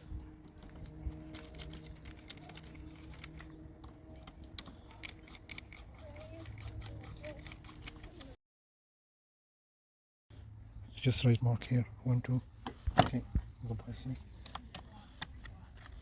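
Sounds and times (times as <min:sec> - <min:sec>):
steady low hum: 0:00.0 - 0:08.4.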